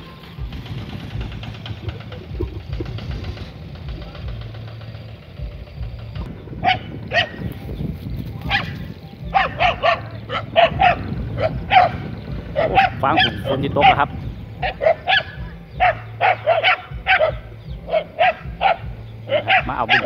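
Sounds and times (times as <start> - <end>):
wind rumble on microphone: 0.0 - 20.0
dog barking: 6.6 - 7.5, 8.4 - 20.0.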